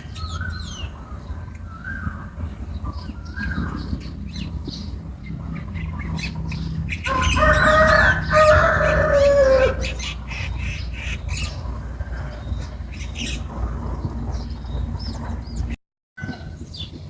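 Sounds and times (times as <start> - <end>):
small birds chirping: 0.0 - 17.0
rooster crowing: 7.0 - 10.0.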